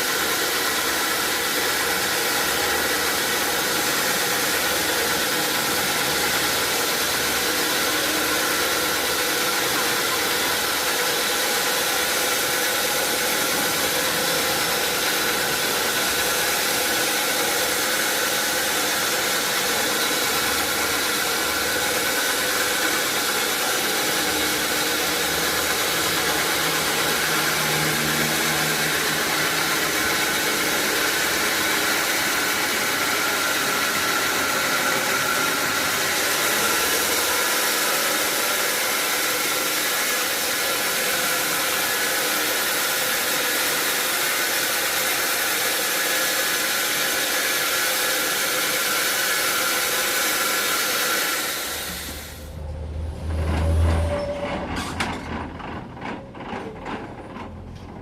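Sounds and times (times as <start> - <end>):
sawmill machinery running: 0.0 - 58.0.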